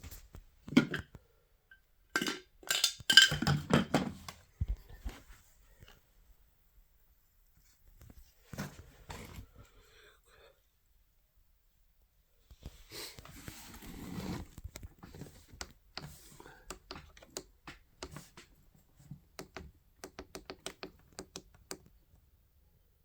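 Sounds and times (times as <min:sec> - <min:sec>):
sharp light clicks and taps: 0:15.5 - 0:18.5, 0:19.3 - 0:21.9.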